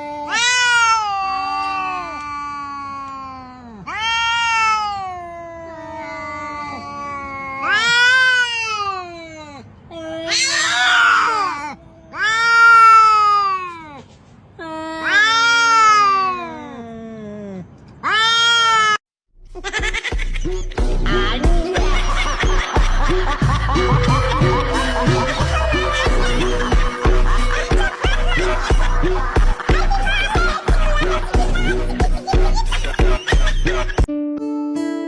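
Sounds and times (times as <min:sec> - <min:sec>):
cat meowing: 0:00.2 - 0:02.8, 0:03.9 - 0:09.1, 0:10.0 - 0:13.9, 0:15.0 - 0:16.5.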